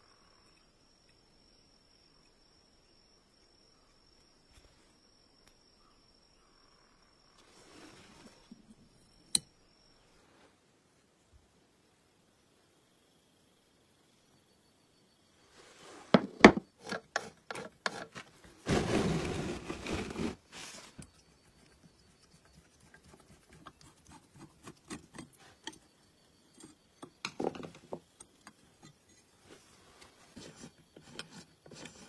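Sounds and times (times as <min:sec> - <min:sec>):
rubbing or scraping: 0:15.6 - 0:21.1.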